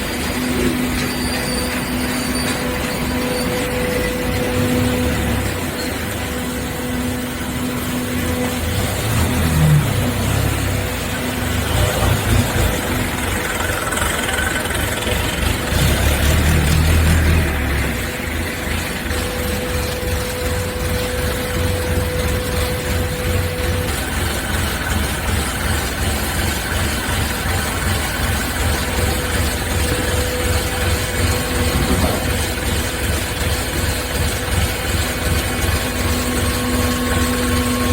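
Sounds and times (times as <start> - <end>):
hydraulic baler running: 0.0 - 37.9.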